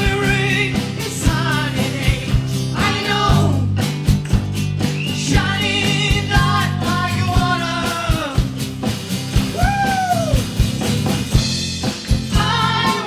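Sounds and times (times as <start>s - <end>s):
bass line: 0.0s - 13.0s
drum kit beat: 0.0s - 13.0s
rock band playing: 0.0s - 13.0s
person singing: 5.3s - 8.5s, 12.4s - 13.0s.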